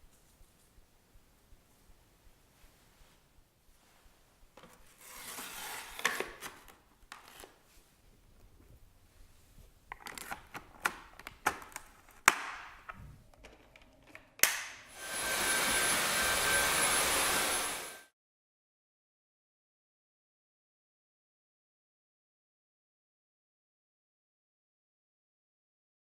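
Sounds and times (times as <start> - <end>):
plastic parts clicking and knocking: 9.9 - 14.7
vacuum cleaner running: 14.4 - 18.1.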